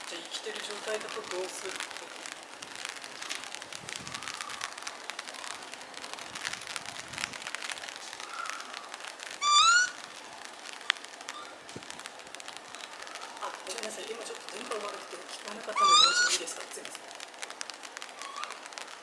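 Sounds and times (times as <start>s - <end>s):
light rain patter: 0.0s - 19.0s
raccoon dog cry: 9.4s - 10.0s, 15.8s - 16.5s, 18.2s - 18.7s.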